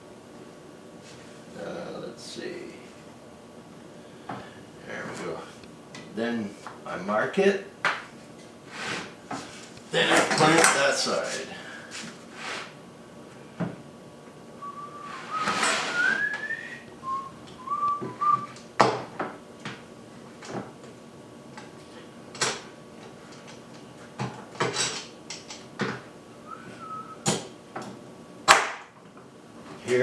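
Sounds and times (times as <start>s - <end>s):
person whistling: 14.6s - 18.5s, 26.5s - 27.2s.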